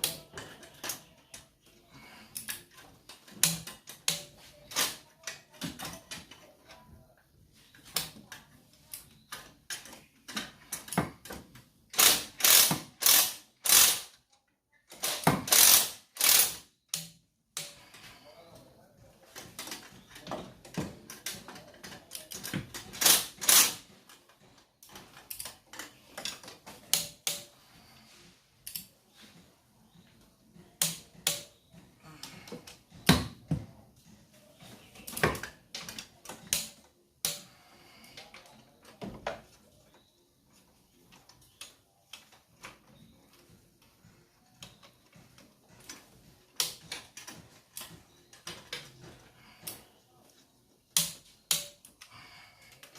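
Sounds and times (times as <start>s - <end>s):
tools and metal parts clanking: 0.0s - 6.9s.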